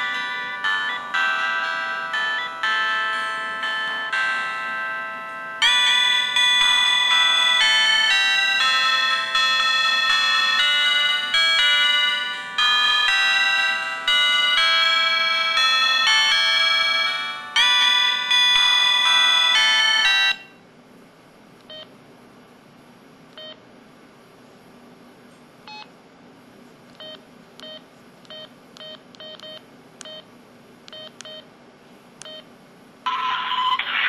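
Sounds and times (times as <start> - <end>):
phone chime melody: 0.0 - 20.6
loud phone sound: 33.1 - 34.0.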